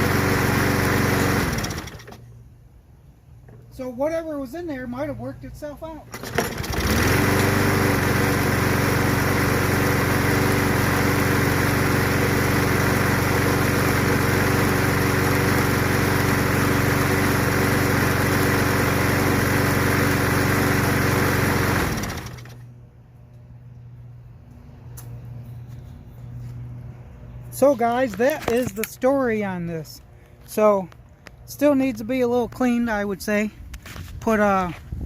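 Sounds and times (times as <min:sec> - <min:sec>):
push mower engine running: 0:00.0 - 0:02.4, 0:06.1 - 0:22.8.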